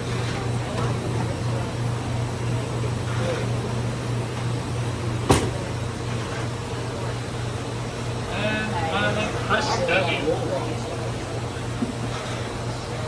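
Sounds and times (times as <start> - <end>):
low machinery hum: 0.0 - 13.0
sharp knock: 5.3 - 5.6.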